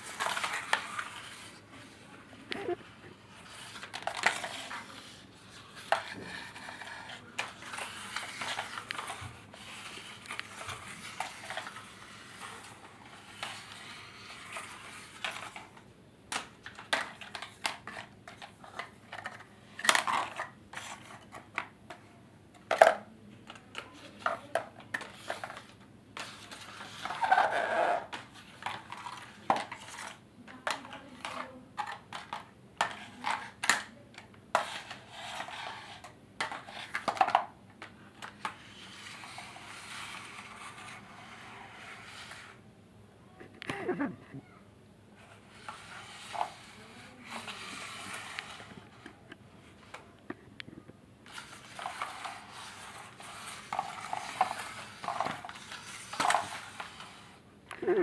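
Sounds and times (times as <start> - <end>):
hard objects clattering: 51.3 - 58.0.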